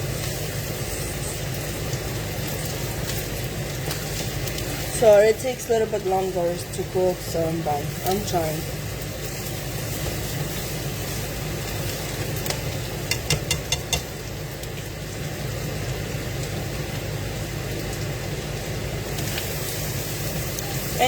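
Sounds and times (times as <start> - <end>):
pan cooking hiss: 0.0 - 21.0.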